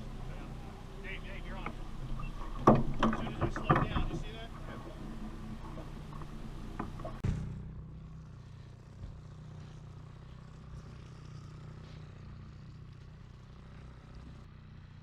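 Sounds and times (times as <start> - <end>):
boat motor running: 0.0 - 15.0.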